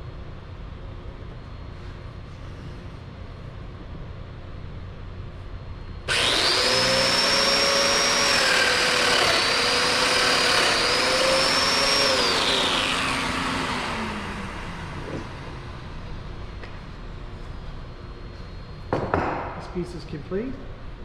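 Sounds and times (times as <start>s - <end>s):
power tool motor whining: 6.1s - 16.0s.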